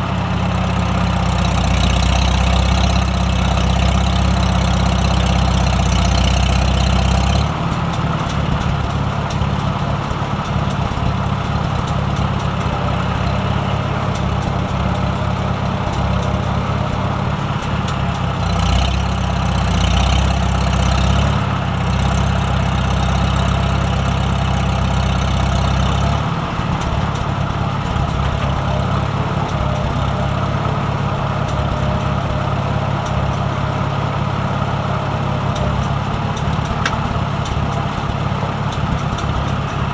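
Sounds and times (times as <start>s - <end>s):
large engine humming: 0.0s - 39.9s.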